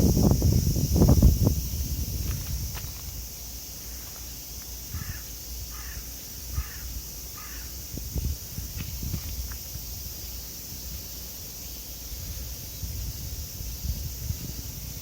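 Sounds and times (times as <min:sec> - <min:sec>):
crow cawing: 0:05.0 - 0:06.0, 0:06.6 - 0:07.7.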